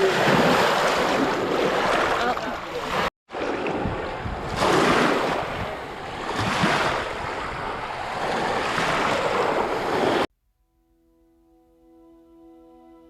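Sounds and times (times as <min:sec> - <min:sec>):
waves breaking: 0:00.0 - 0:10.3
wind on microphone: 0:03.3 - 0:10.2.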